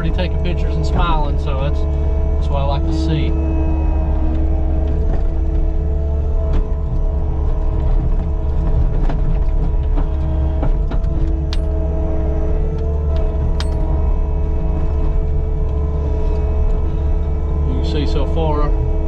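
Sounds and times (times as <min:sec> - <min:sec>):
diesel engine running: 0:00.0 - 0:19.0
sharp clicks and knocks: 0:10.9 - 0:11.8, 0:13.1 - 0:13.9.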